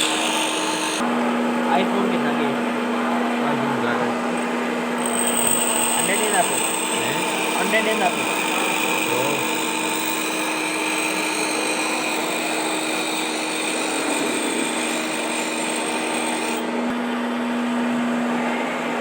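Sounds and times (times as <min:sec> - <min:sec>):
grinding hiss: 0:00.0 - 0:01.0, 0:05.0 - 0:14.2
grinder motor humming and whining: 0:00.0 - 0:01.1, 0:04.1 - 0:19.0.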